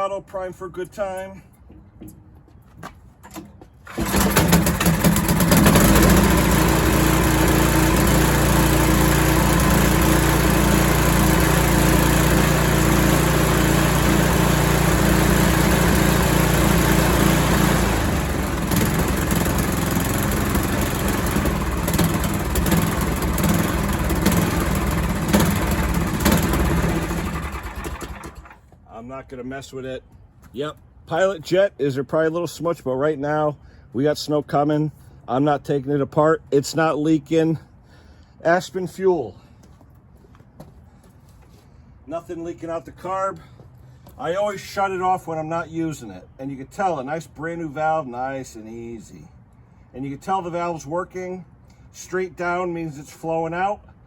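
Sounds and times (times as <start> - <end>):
snowblower engine running: 3.9 - 28.6.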